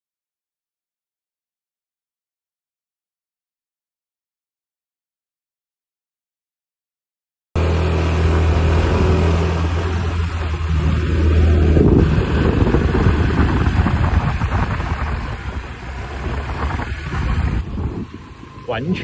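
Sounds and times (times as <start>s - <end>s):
scooter engine running: 7.6s - 19.0s.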